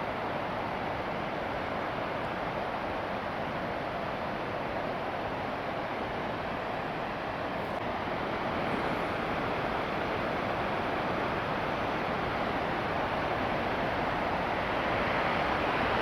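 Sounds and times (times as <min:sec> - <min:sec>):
rushing water of stream: 0:00.0 - 0:16.0.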